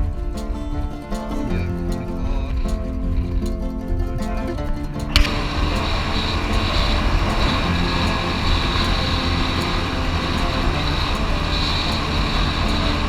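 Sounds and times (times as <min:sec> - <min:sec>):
outboard motor running: 0:05.0 - 0:13.0.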